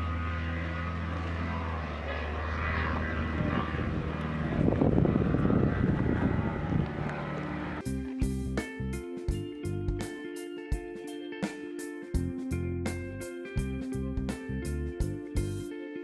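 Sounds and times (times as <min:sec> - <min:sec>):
engine humming: 0:00.0 - 0:10.1.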